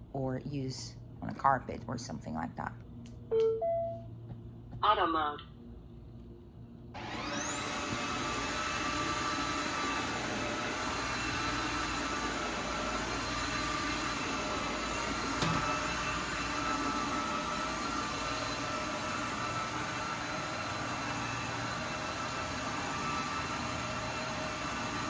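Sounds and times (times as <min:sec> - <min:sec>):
vacuum mop motor whine: 0:07.0 - 0:25.0.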